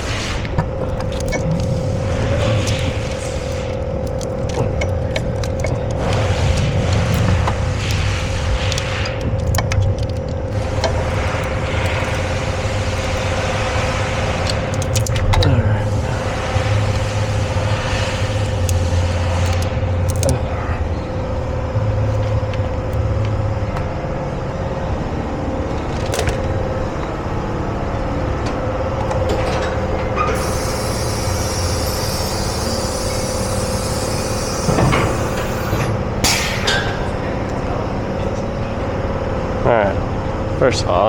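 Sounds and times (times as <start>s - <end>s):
knocks and clunks: 0.0s - 17.8s
vehicle engine running: 0.0s - 41.0s
hiss: 30.2s - 37.2s.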